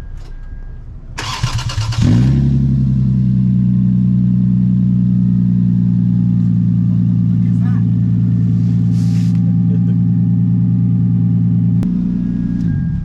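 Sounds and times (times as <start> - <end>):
car engine idling: 0.0 - 13.0
car engine starter cranking: 1.2 - 2.2.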